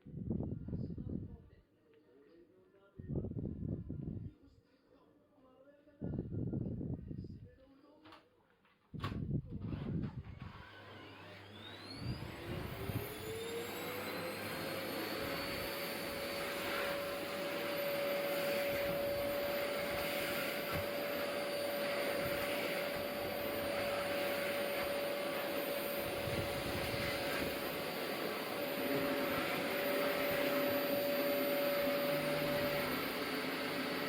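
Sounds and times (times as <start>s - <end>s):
vacuum cleaner motor whine: 9.7s - 34.0s.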